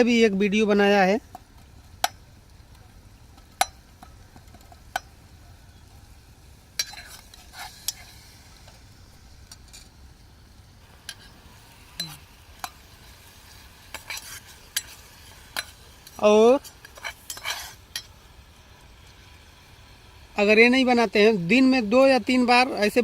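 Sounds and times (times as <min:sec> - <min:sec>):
faint sizzle: 0:00.0 - 0:23.0
spoon stirring in pan: 0:06.8 - 0:09.9, 0:10.8 - 0:20.2.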